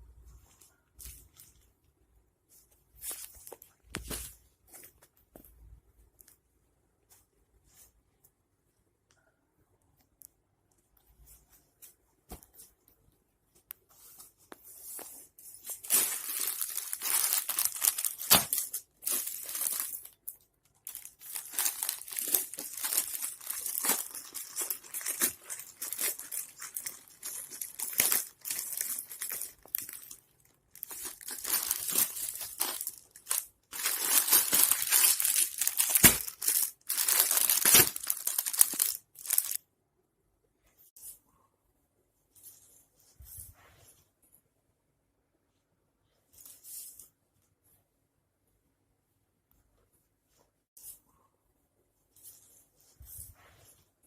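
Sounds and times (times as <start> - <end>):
plastic packaging crinkling and tearing: 15.6 - 39.6.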